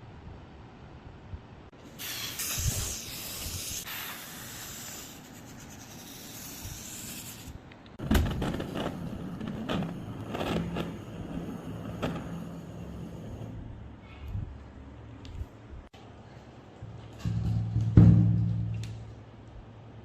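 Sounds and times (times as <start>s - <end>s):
spray hissing: 1.8s - 7.6s, 8.7s - 13.6s.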